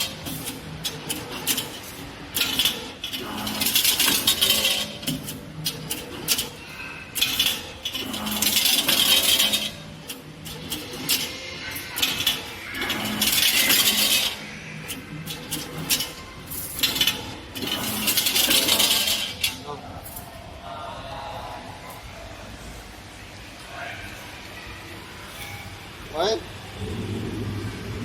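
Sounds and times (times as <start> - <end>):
machine hissing and metallic clicking: 0.0 - 20.4
low machine hum: 0.0 - 28.0.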